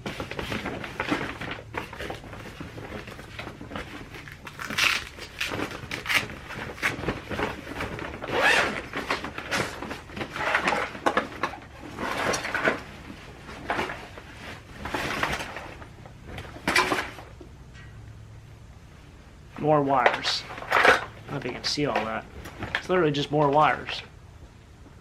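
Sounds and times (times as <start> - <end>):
rummaging through bag of wires: 0.0 - 17.3.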